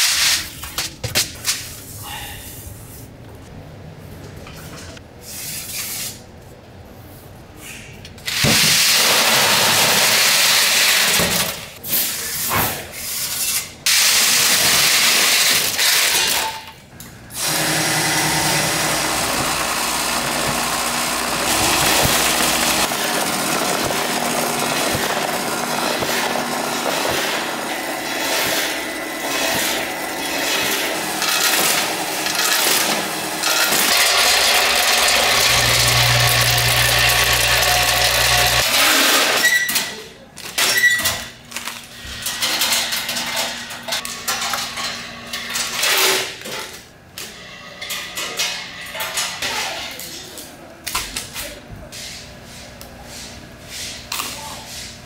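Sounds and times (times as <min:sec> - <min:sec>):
loud machinery noise bursts: 0:08.3 - 0:11.6, 0:17.3 - 0:39.4.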